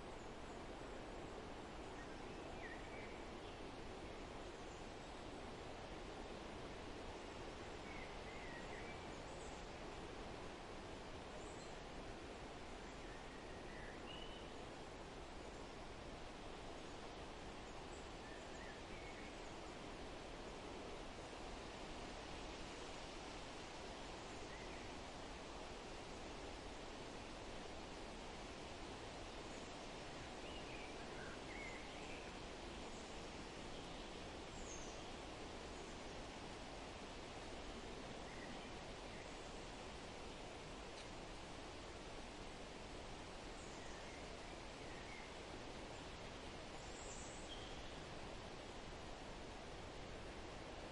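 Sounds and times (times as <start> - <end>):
wind rustling through trees: 0.0 - 50.9
distant bird chirps and trills: 0.1 - 5.4, 7.2 - 10.0, 11.4 - 16.1, 16.7 - 20.7, 29.4 - 49.1
faint bird chirps: 12.8 - 14.7, 46.7 - 48.0.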